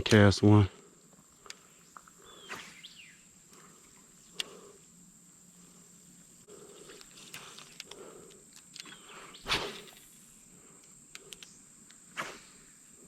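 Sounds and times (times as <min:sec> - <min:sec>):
insects droning: 0:00.0 - 0:13.0
sharp clicks: 0:10.8 - 0:12.0.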